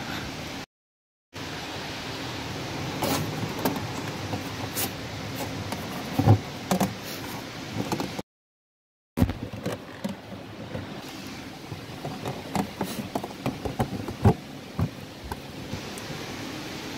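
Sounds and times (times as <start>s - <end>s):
steady hiss: 10.5s - 16.9s
tools and parts knocking: 12.0s - 15.4s.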